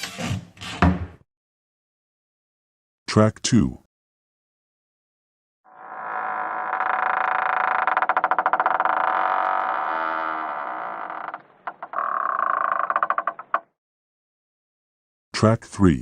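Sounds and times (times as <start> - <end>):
door creaking on hinges: 0.0 - 1.2, 5.7 - 13.8
door clicks: 10.7 - 13.7.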